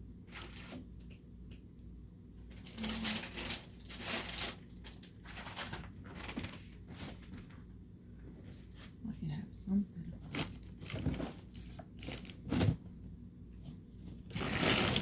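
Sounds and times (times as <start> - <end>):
objects rustling and clattering: 0.2 - 1.2, 2.4 - 9.0, 10.1 - 15.0.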